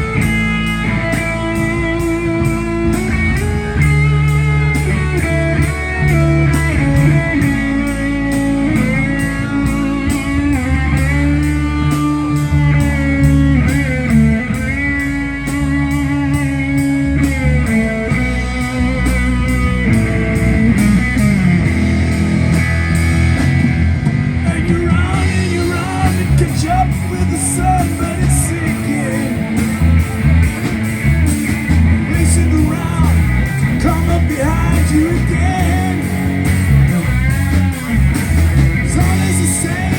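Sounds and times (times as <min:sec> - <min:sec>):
lead guitar bending notes: 0:00.0 - 0:39.9
live rock band playing: 0:00.0 - 0:39.9.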